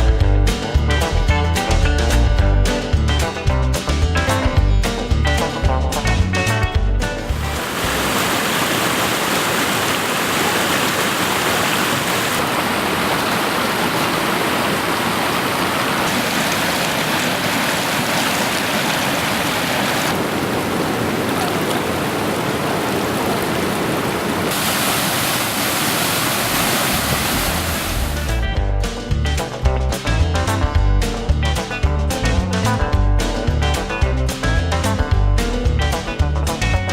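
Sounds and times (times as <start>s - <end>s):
waterfall rushing: 7.3s - 28.4s.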